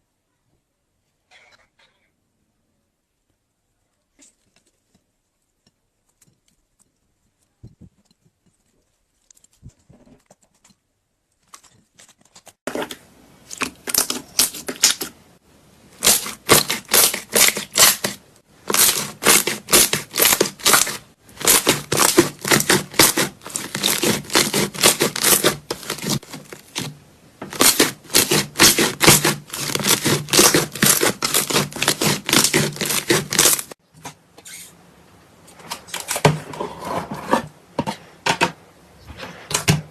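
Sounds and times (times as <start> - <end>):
slime crackling and popping: 11.6 - 15.2, 16.0 - 26.9, 27.6 - 33.7.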